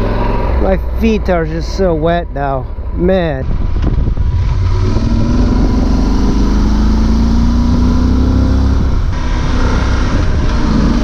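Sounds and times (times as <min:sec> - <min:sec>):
motorcycle engine accelerating: 0:00.0 - 0:01.2, 0:03.5 - 0:11.0
wind rumble on microphone: 0:00.0 - 0:11.0.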